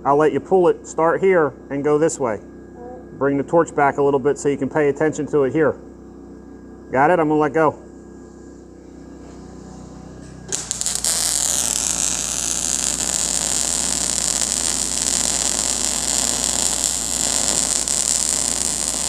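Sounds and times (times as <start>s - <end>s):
faint electrical hum: 0.0s - 19.0s
welding arc crackling: 10.2s - 19.0s.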